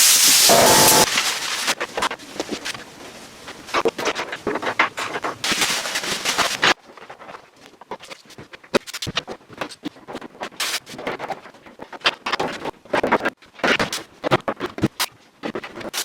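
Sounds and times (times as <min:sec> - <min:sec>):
hiss bursts: 0:00.0 - 0:01.2.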